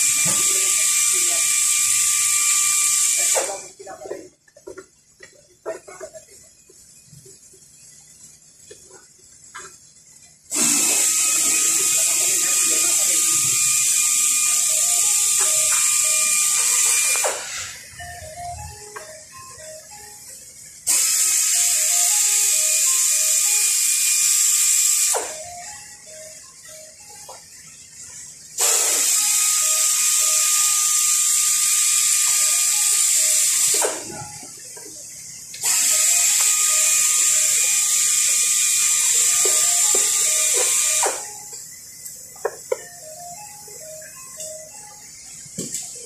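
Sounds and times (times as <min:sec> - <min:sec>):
compressed air hissing: 0:00.0 - 0:03.8, 0:05.9 - 0:18.0, 0:20.8 - 0:25.6, 0:27.6 - 0:42.7.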